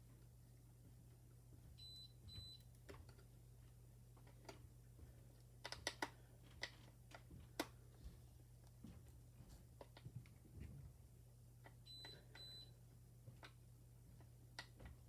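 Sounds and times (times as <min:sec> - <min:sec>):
screwdriver clicks and taps: 0:05.6 - 0:07.7.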